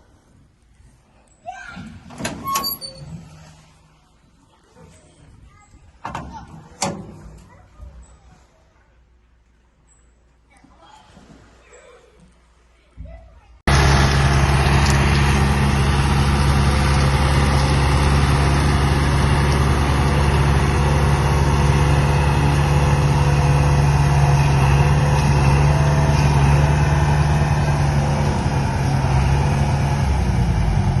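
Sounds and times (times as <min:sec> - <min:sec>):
diesel engine running steadily: 0:13.7 - 0:31.0.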